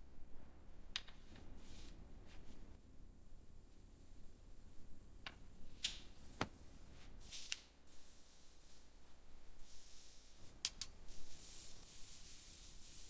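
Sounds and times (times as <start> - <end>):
faint high hiss: 5.6 - 13.0.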